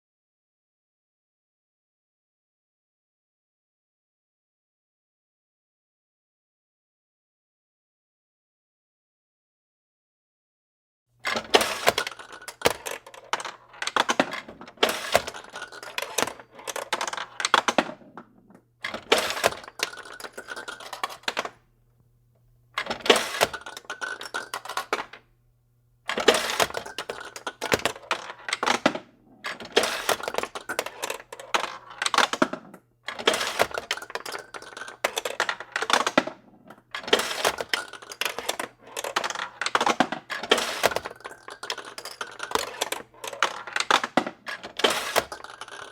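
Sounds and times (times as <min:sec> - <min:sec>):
steel balls clattering through pins: 0:11.3 - 0:21.6, 0:22.8 - 0:25.2, 0:26.1 - 0:45.9.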